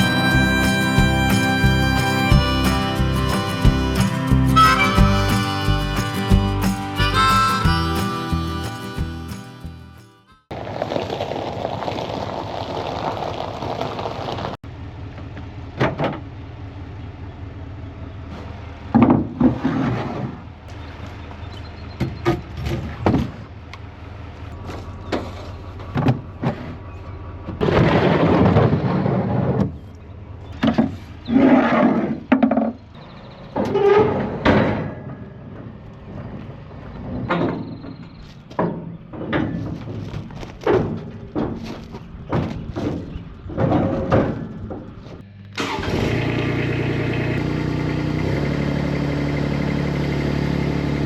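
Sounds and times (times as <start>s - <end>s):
skid steer engine running: 0.0s - 10.7s, 14.0s - 51.0s
wood knocks and thuds: 18.9s - 20.4s, 22.0s - 23.5s, 24.6s - 26.8s, 37.0s - 45.2s.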